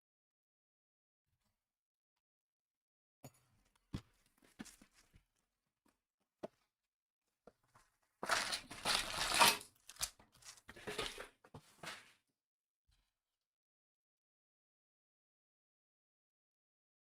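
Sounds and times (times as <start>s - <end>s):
packaging crinkling and tearing: 8.3s - 10.7s.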